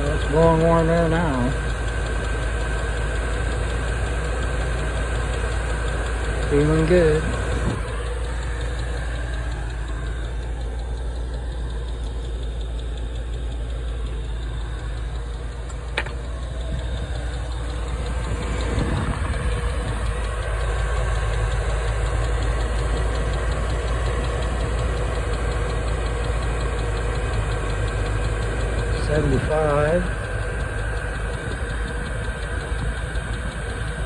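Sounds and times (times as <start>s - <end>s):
air heater humming: 6.0s - 22.5s, 28.6s - 34.0s.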